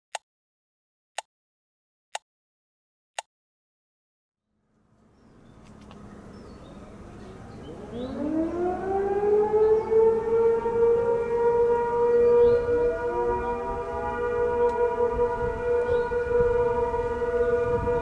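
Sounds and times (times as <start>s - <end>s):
warning sirens winding up: 5.8s - 18.0s.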